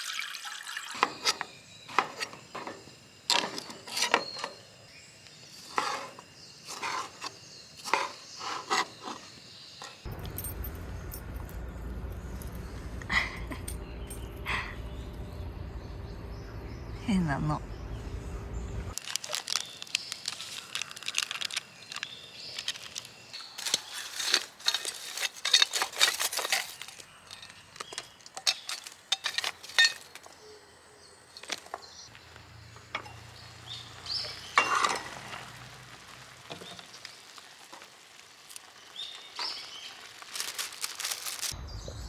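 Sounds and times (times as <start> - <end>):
dishes and utensils clinking: 23.6 - 30.4, 34.3 - 35.5.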